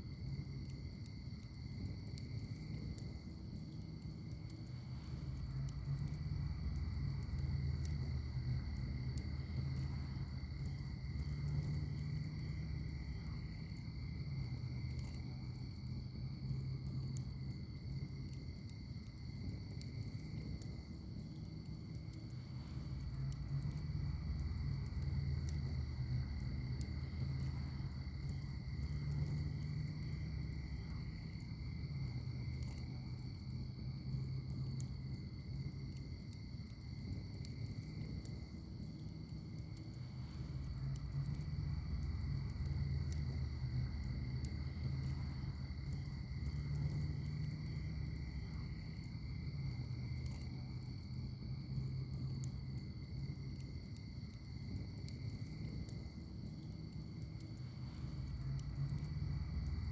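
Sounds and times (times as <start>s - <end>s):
insect chorus: 0.0s - 59.9s
wood fire crackling and popping: 0.0s - 59.9s.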